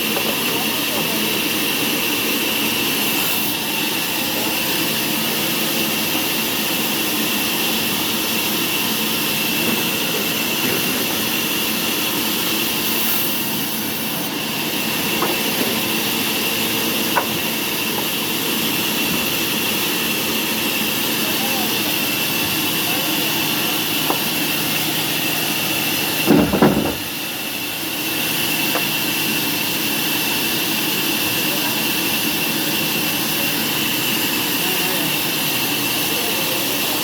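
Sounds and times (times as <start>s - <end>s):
sawmill machinery whining: 0.0s - 37.0s.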